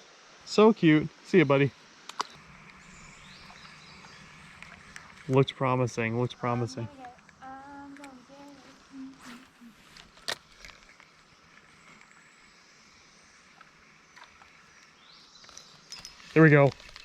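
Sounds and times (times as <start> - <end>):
faint outdoor hiss: 0.0 - 17.0
soft voice speaking or humming: 6.2 - 9.9.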